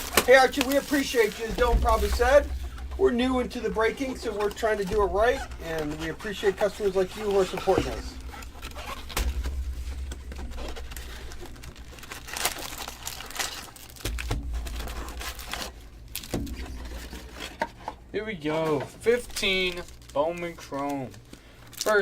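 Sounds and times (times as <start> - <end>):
low handling bumps: 0.0 - 13.2, 14.0 - 17.4
wrapping crinkling and tearing: 0.0 - 22.0.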